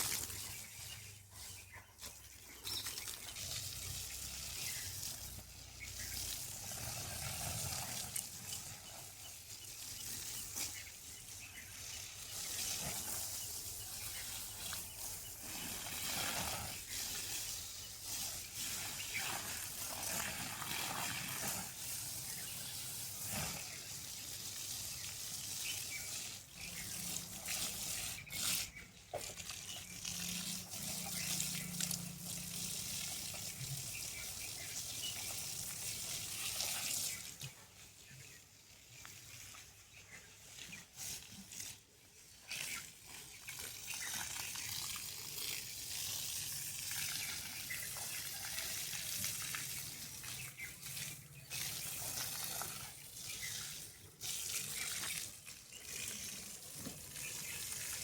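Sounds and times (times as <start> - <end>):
running water hissing: 0.0 - 58.0.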